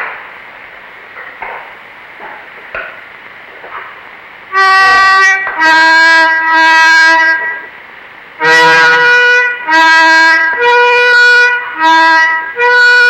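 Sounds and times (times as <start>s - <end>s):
melodica playing slow melody: 4.5s - 7.8s, 8.4s - 13.0s.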